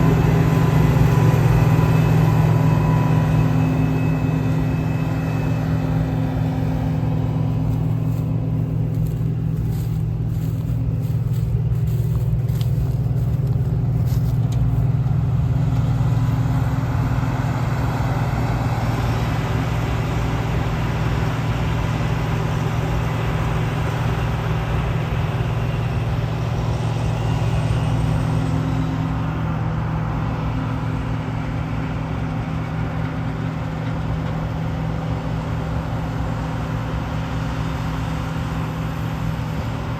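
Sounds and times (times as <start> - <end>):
combine harvester engine humming: 0.0 - 39.9
faint clicks and rustles: 7.5 - 15.9.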